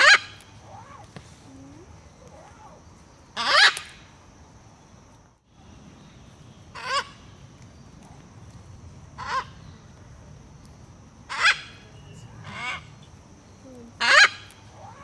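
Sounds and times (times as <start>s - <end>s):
macaw squawking: 14.0s - 15.0s.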